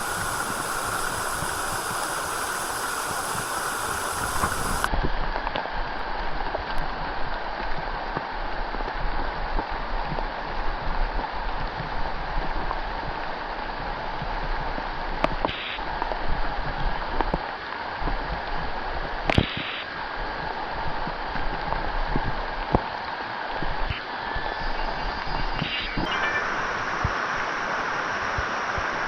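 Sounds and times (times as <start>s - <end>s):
river water rushing: 0.0s - 4.9s, 26.1s - 29.0s
sharp clicks: 0.0s - 4.9s
short high-pitched sounds: 23.9s - 28.1s.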